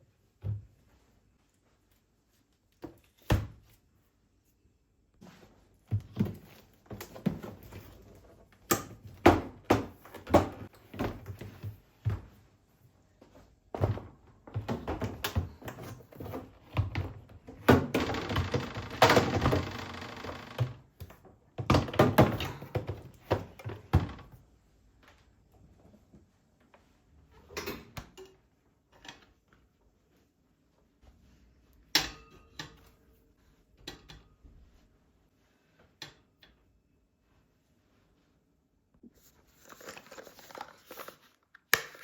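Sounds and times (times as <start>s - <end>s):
objects knocking and thudding: 5.2s - 12.5s, 13.2s - 24.4s.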